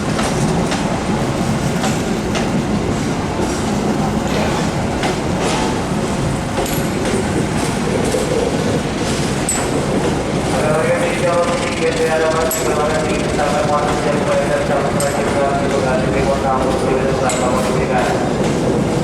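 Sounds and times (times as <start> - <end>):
train rumbling on tracks: 0.0 - 19.0
wheels clicking over rail joints: 6.5 - 19.0.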